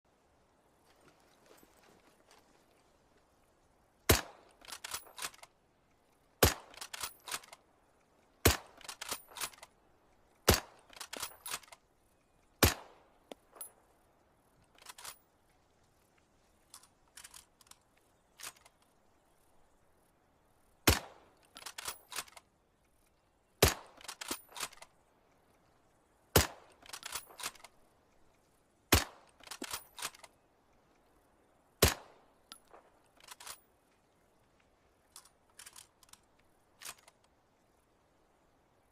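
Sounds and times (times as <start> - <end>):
rifle shots: 4.1 - 5.3, 6.4 - 7.5, 8.4 - 9.5, 10.5 - 11.6, 12.6 - 13.0, 20.9 - 21.2, 23.6 - 24.7, 26.4 - 27.6, 28.9 - 29.8, 31.8 - 32.2
rifle bolt clicks: 4.1 - 5.6, 6.2 - 7.7, 8.5 - 9.8, 10.5 - 11.9, 20.9 - 22.5, 23.6 - 25.0, 26.4 - 27.8, 29.0 - 31.0, 31.8 - 33.6, 35.1 - 37.3.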